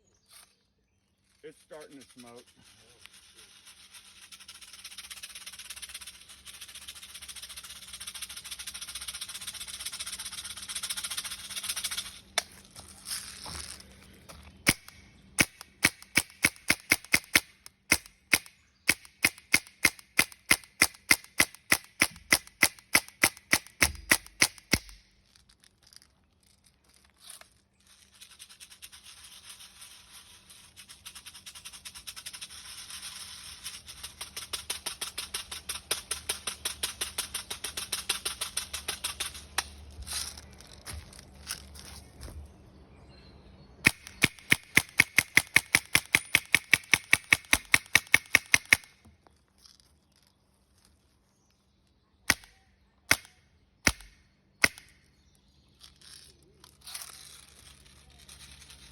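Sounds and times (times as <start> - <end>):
air gun shots cracking: 14.7 - 25.0, 43.8 - 48.9, 52.3 - 55.0.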